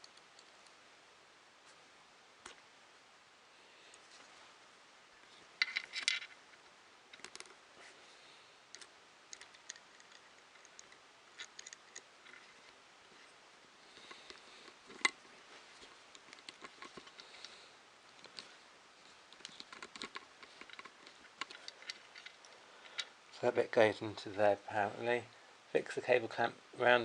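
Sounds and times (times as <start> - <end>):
plastic parts clicking and rattling: 5.6 - 6.4, 7.1 - 7.6, 8.7 - 12.8, 14.0 - 15.3, 16.1 - 17.5, 19.2 - 23.1.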